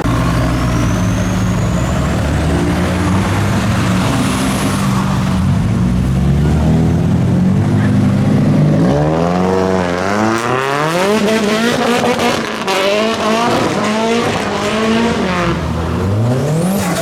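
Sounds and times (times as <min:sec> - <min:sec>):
car engine revving hard: 0:00.0 - 0:17.0
tyre squeal: 0:00.1 - 0:02.7.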